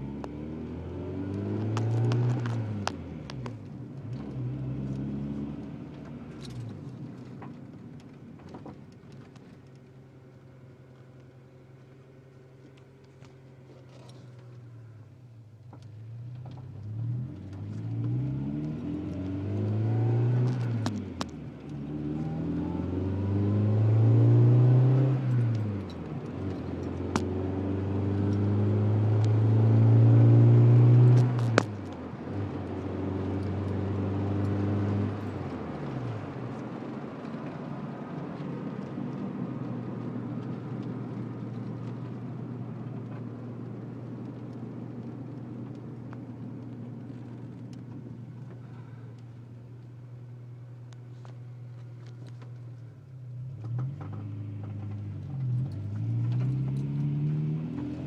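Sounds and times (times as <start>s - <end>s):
car engine revving: 0.0s - 7.0s, 16.4s - 49.0s, 52.0s - 58.0s
car engine idling: 35.2s - 56.1s.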